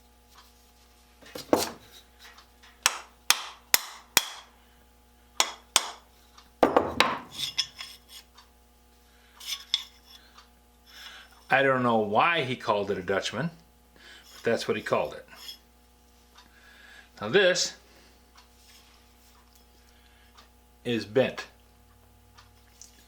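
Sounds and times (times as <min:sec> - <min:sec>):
metal tool clattering: 0:06.6 - 0:08.0
metal tool clinking: 0:07.0 - 0:07.9.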